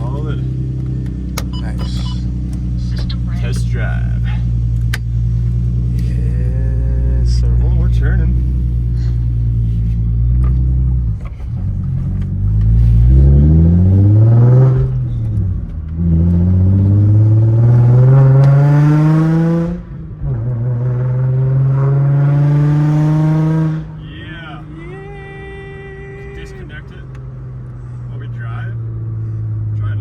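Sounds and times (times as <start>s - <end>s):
car accelerating through gears: 10.3s - 24.8s.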